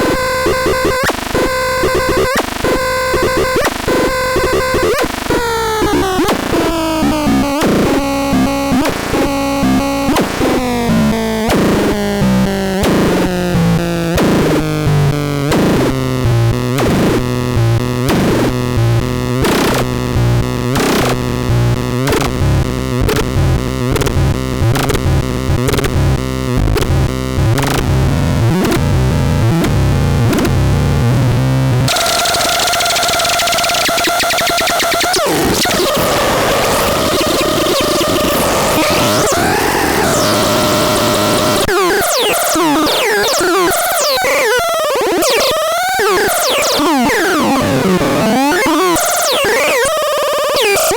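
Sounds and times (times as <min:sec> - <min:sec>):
harsh pulsing synthesized tone: 0:00.0 - 0:14.6, 0:31.9 - 0:50.9.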